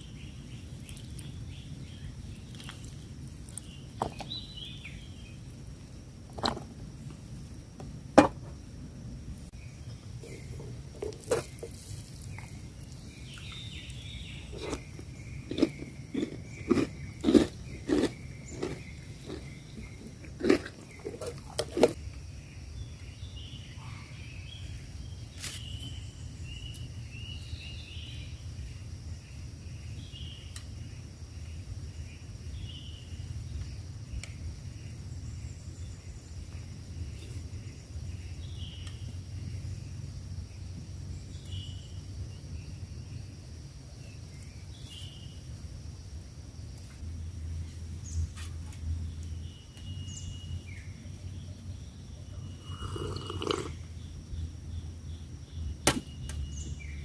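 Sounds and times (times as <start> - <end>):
low wind rumble: 0.0 - 25.4
loud crunches: 14.5 - 22.0.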